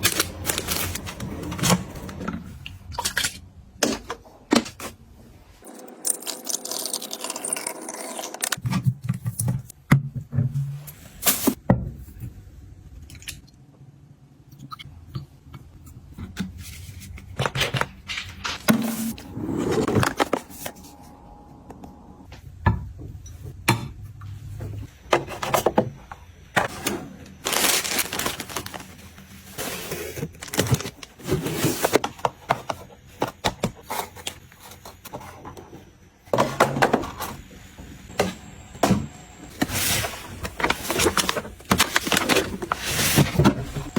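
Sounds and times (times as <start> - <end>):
packaging rustling: 0.0 - 2.1, 27.4 - 32.1, 39.6 - 43.9.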